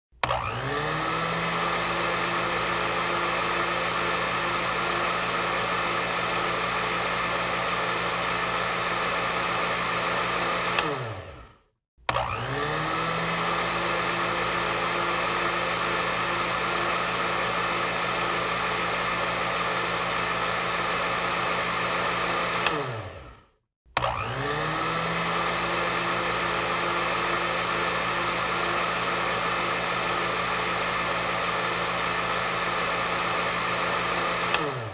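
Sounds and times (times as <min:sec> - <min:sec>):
electric mixer motor whining: 0:00.2 - 0:34.9.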